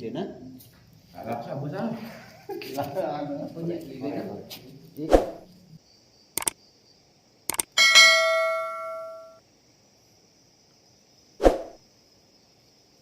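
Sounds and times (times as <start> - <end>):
high insect hum: 0.0 - 13.0
metal object ringing when struck: 7.8 - 9.4.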